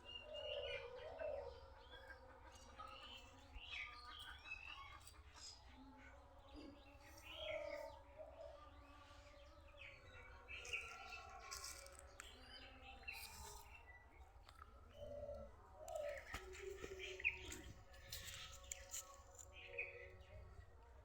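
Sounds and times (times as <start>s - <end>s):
birds chirping: 14.6s - 20.2s.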